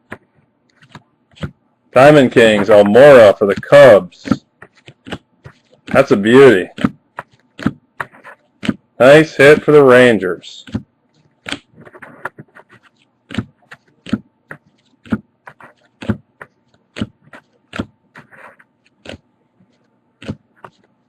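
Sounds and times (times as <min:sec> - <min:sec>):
trading cards flipping: 0:00.1 - 0:01.5, 0:02.2 - 0:08.8, 0:10.6 - 0:20.9.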